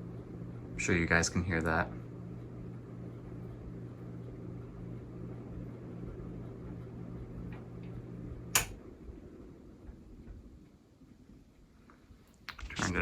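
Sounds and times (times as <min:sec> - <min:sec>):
ceiling fan motor hum: 0:00.0 - 0:13.0
fan switch click: 0:07.5 - 0:08.8.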